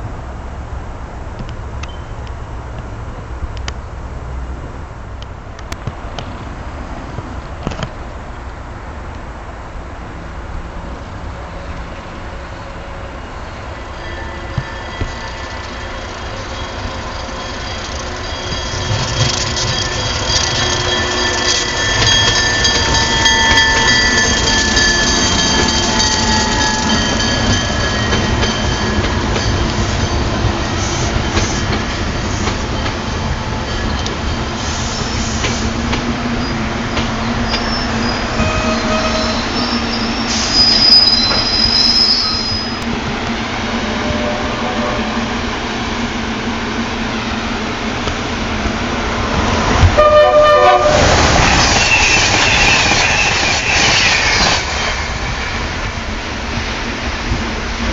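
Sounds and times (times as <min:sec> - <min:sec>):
train rumble: 0:00.0 - 0:57.9
train wheels squealing on rails: 0:01.8 - 0:02.4, 0:11.4 - 0:42.9, 0:43.8 - 0:45.5, 0:48.3 - 0:56.1.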